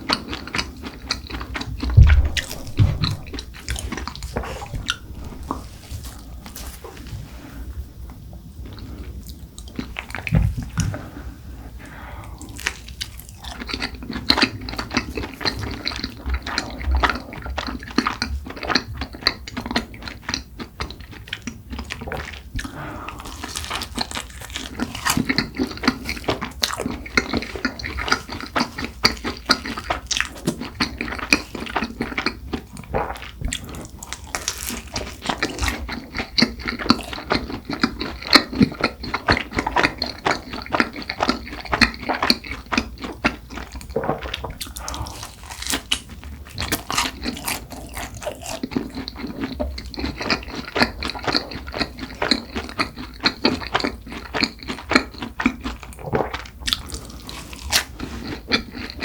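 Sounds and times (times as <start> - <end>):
chewing crisp pastry: 0.0 - 59.0
wet mouth sounds: 1.0 - 7.1.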